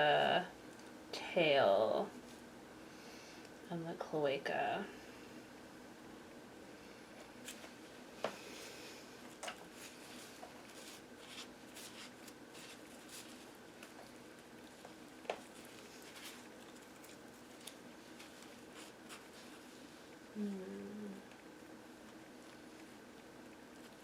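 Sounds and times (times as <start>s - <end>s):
faint steady hum: 0.0s - 24.0s
scraping and rustling on feathers: 7.2s - 20.2s.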